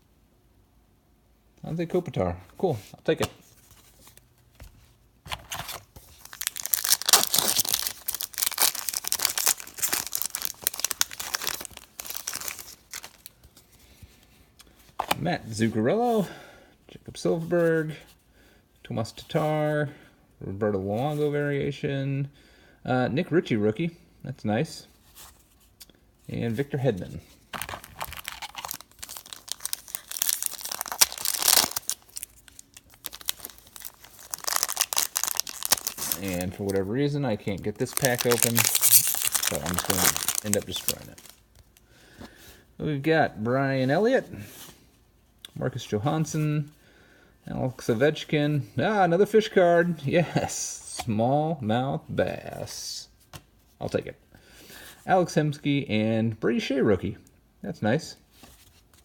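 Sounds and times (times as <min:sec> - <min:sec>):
card pack wrapper tearing and crinkling: 0:05.3 - 0:13.4, 0:27.5 - 0:41.8.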